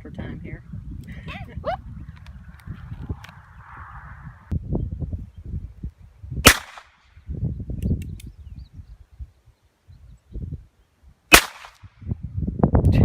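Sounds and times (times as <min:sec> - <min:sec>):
revolver gunshot with echo: 0:06.4 - 0:07.0, 0:11.3 - 0:11.8.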